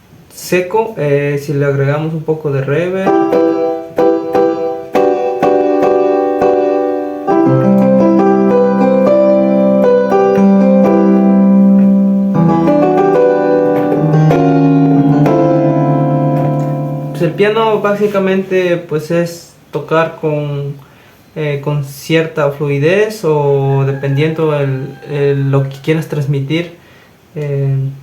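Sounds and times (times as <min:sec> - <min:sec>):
electronic keyboard piano chords: 0:02.6 - 0:19.9.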